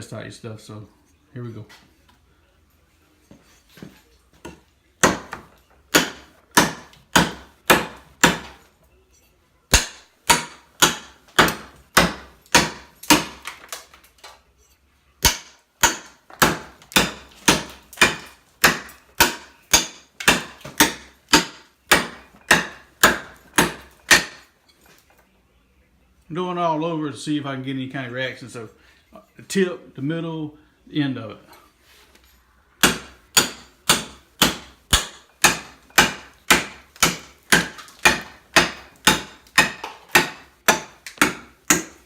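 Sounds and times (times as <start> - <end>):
cleaver chopping into wood: 4.5 - 8.6, 9.7 - 13.8, 15.2 - 24.5, 32.8 - 42.0.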